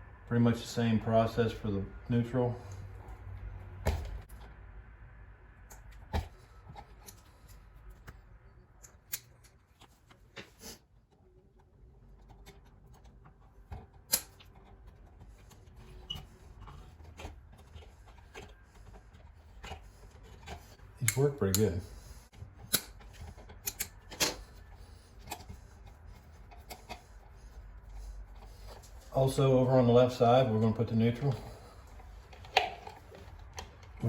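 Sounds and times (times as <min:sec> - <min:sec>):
wires rustling: 0:05.6 - 0:34.0
pliers metallic clicks: 0:21.0 - 0:21.8.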